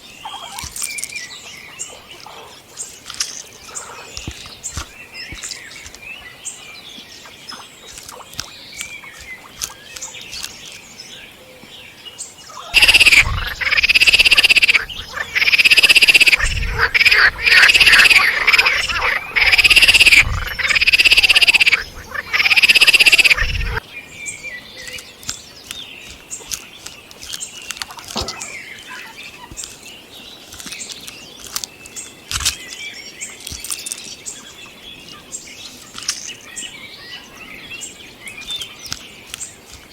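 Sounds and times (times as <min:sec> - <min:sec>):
faint chirps and ticks: 0:00.2 - 0:11.0, 0:12.4 - 0:23.8
squirrel calling loudly: 0:12.6 - 0:23.8.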